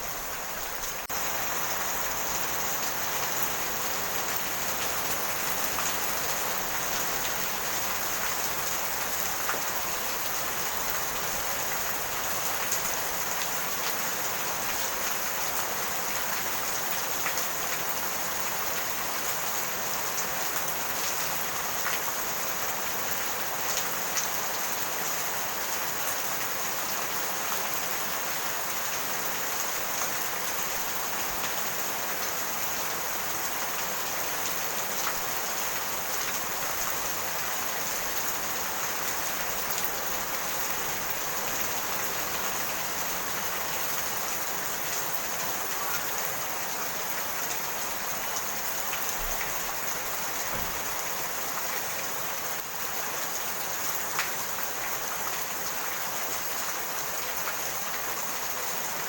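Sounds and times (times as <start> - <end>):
rain pattering: 0.0 - 59.0.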